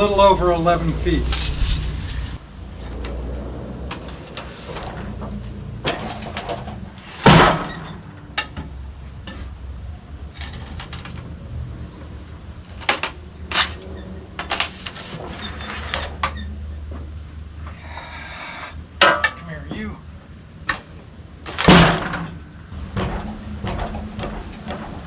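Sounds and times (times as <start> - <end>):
engine idling with low hum: 0.0 - 25.0
clicks and knocks: 10.3 - 11.3, 12.7 - 13.8.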